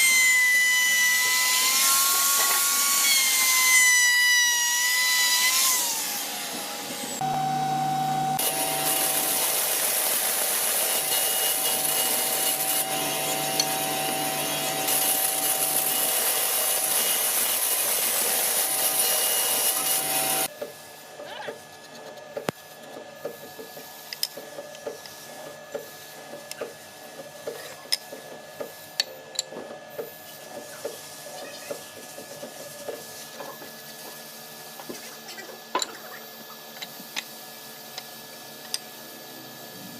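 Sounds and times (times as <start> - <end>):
power tool on wood: 0.0 - 20.5.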